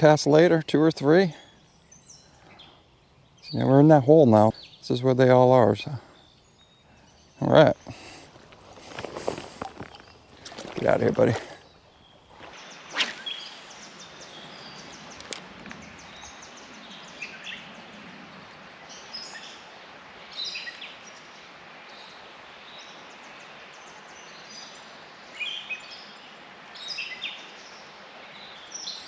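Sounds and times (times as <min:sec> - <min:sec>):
river current rushing: 0:07.4 - 0:12.6.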